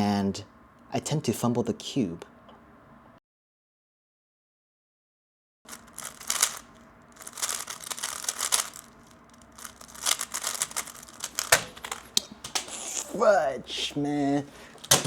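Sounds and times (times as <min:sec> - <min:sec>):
speed cube plastic clicking: 0:06.0 - 0:08.9, 0:09.6 - 0:12.6.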